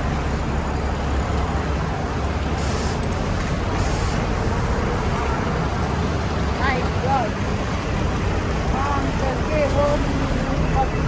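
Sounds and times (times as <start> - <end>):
bus engine rumble: 0.0 - 11.0
air brake hiss: 2.6 - 4.5.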